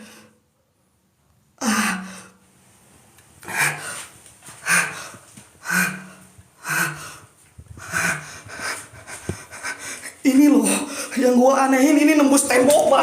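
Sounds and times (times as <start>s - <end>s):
man breathing heavily: 3.4s - 11.3s.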